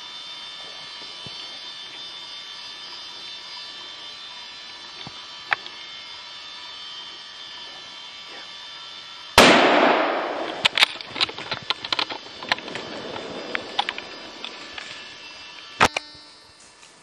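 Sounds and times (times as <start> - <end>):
gunshot with echo: 9.4 - 10.6.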